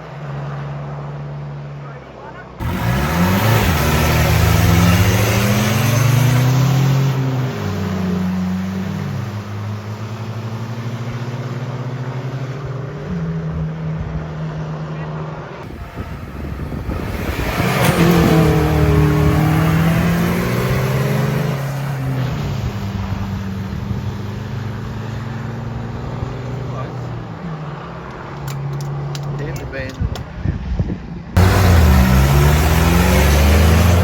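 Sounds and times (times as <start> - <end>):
another engine revving: 2.6 - 12.4, 15.6 - 27.0, 31.4 - 34.0
engine revving hard: 2.6 - 12.5, 15.6 - 27.0, 31.4 - 34.0.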